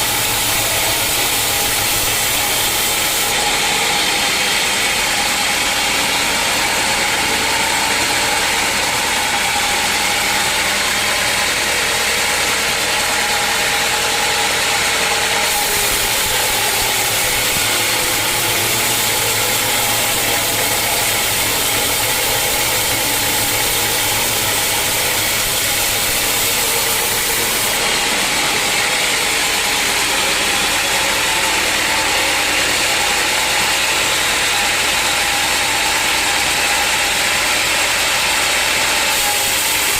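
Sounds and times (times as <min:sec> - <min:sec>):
sawmill running: 0:00.0 - 0:39.9
bright hiss: 0:15.5 - 0:27.8.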